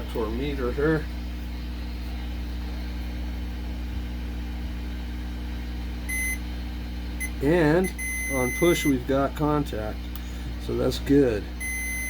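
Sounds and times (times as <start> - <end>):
steady low hum: 0.0 - 12.0
short high electronic beep: 6.1 - 6.4.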